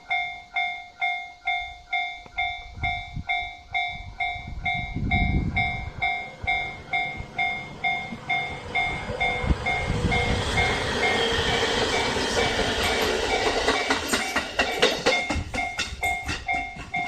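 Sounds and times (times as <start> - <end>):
level crossing warning bell: 0.0 - 17.0
train wheels thumping over rail joints: 5.4 - 17.0.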